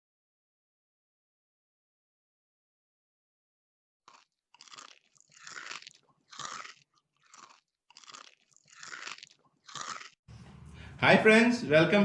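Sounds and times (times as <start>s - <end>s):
person chewing crunchy chips: 4.1s - 10.2s.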